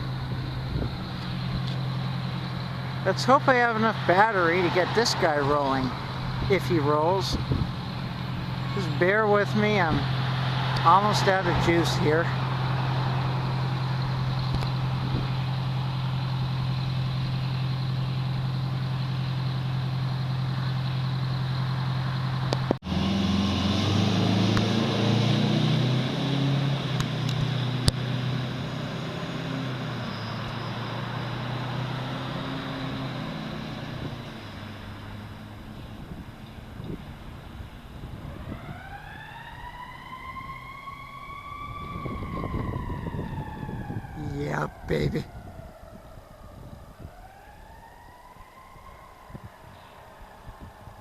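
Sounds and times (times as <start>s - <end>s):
fire truck engine idling: 0.0s - 22.8s.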